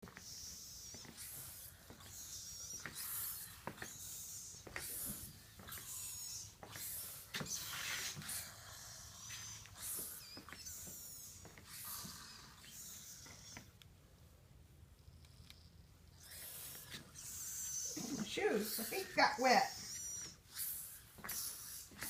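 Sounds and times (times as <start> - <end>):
wet shoes squeaking and squelching: 0.0 - 13.6.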